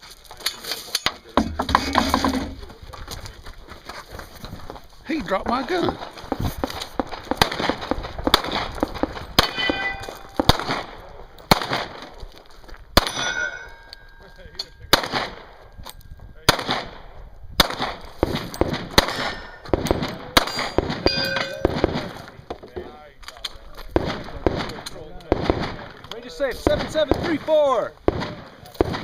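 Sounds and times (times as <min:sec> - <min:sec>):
gunshots: 0:05.8 - 0:12.2, 0:13.0 - 0:13.7, 0:14.9 - 0:15.6, 0:16.4 - 0:22.3, 0:23.9 - 0:29.0
steel targets ringing: 0:09.4 - 0:10.5, 0:13.0 - 0:14.9, 0:19.0 - 0:19.7, 0:20.4 - 0:21.8.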